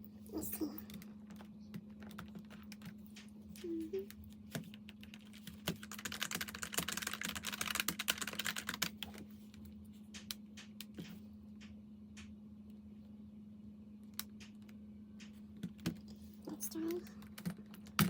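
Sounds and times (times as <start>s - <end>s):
steady low hum: 0.0s - 18.0s
keyboard typing: 0.8s - 9.2s.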